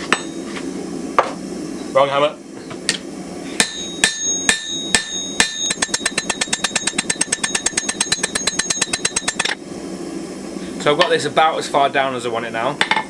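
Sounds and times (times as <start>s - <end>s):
hammer striking steel on anvil: 3.6s - 9.6s.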